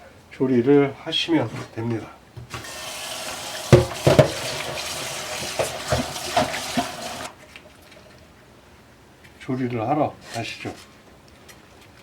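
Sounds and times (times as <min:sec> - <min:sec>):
tap water running over a pot: 0:02.4 - 0:08.2
metal pot knocking: 0:03.7 - 0:07.2.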